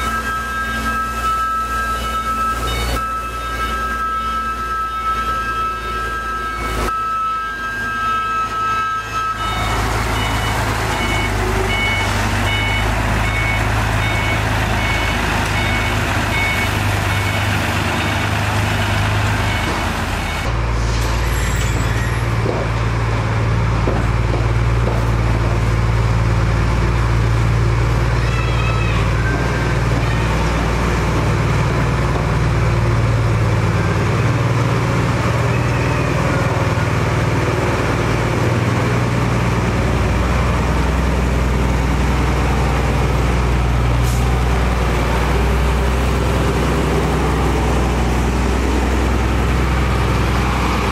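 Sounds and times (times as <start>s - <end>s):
reversing alarm beeping: 0.0s - 20.6s
heavy machinery diesel engines: 0.0s - 50.9s.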